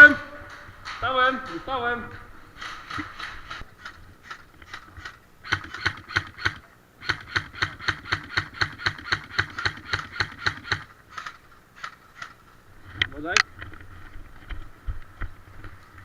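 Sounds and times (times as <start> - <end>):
airsoft rifle shots: 2.6 - 12.3.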